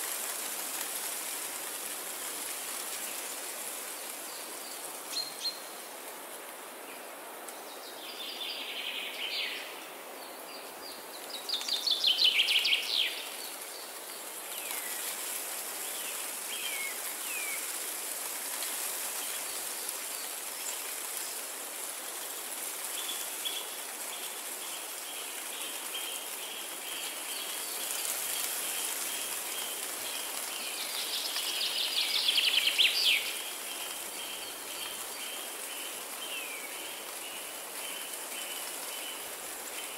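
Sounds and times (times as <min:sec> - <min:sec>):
wind through trees: 0:00.0 - 0:39.9
songbirds singing: 0:07.6 - 0:15.2, 0:22.9 - 0:39.9.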